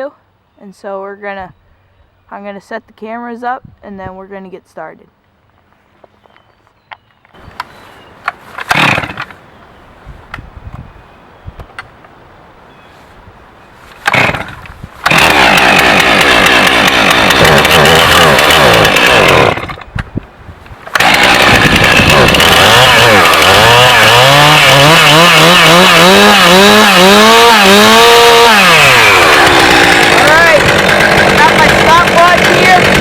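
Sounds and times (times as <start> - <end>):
chainsaw revving: 8.6 - 9.3, 14.0 - 19.9, 20.9 - 33.0.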